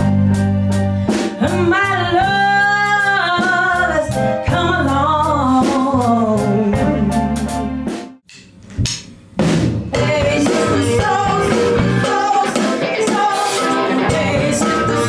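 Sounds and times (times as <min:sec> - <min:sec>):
band playing: 0:00.0 - 0:05.0, 0:06.5 - 0:08.2, 0:10.0 - 0:15.0
person singing: 0:10.0 - 0:15.0.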